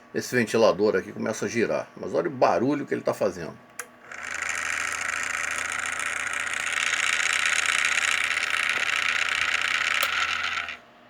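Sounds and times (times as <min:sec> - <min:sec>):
cooling fan vibrating: 0:03.2 - 0:11.0.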